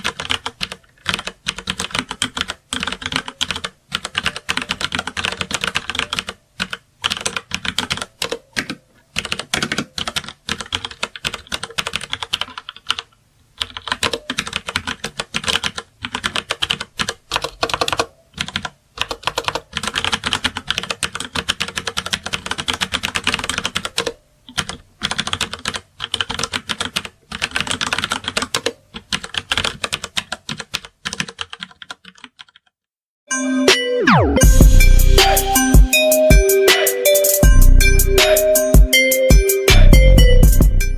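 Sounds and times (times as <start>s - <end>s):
keyboard typing: 0.0s - 32.7s
loud music: 33.3s - 40.9s.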